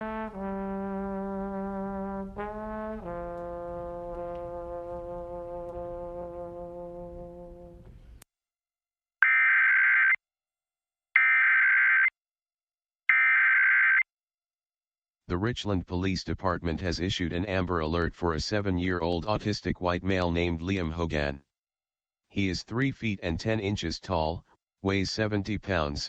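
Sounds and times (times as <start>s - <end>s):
held musical chord: 0.0s - 7.9s.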